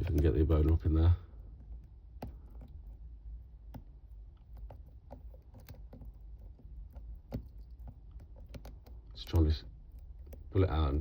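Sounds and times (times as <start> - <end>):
lock pick clicking and scraping: 3.7 - 10.5.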